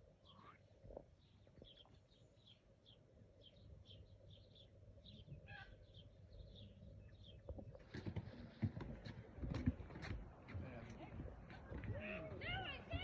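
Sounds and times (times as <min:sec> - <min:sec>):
bird chirping: 0:01.2 - 0:07.7.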